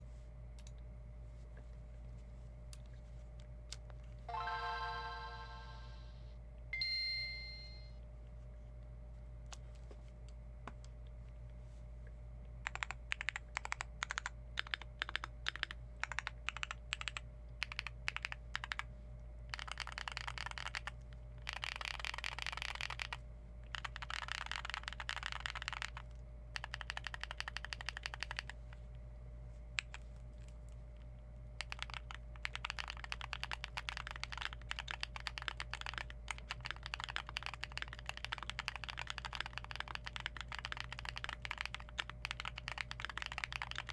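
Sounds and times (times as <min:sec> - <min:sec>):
mechanical keyboard typing: 0:12.6 - 0:18.9, 0:19.5 - 0:28.6, 0:31.6 - 0:43.9.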